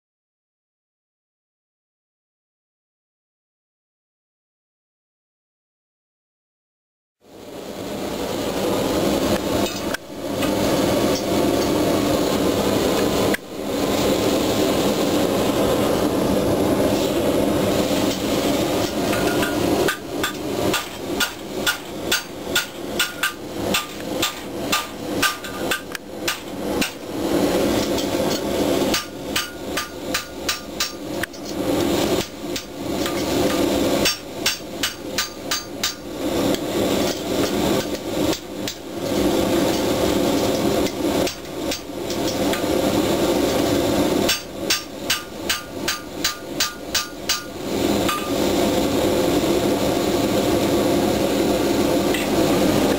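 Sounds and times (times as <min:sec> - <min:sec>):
hammer striking metal: 0:18.8 - 0:27.0, 0:27.8 - 0:31.0, 0:32.2 - 0:36.1, 0:44.3 - 0:48.4.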